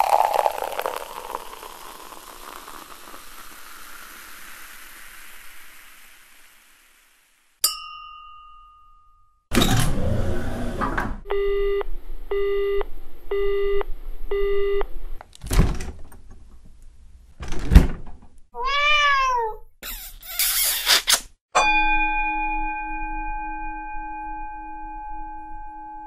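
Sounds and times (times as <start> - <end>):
cat meow: 18.6 - 19.8.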